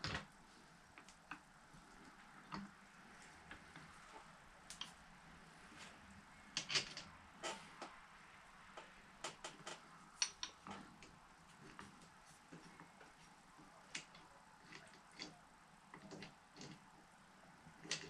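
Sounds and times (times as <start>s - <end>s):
clicks and knocks of metal parts: 6.5s - 8.0s, 8.7s - 13.2s, 13.8s - 16.9s, 17.8s - 18.0s.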